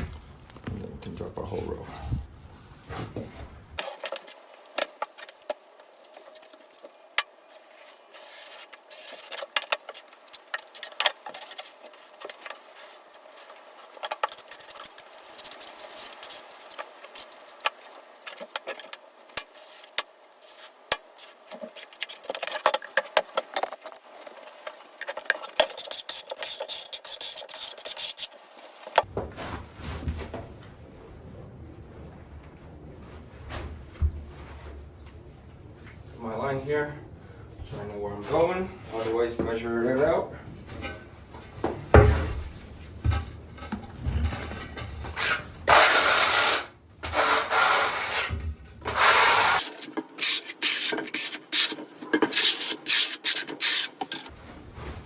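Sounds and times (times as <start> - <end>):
trowel scraping mortar: 18.3 - 29.1, 44.0 - 54.4.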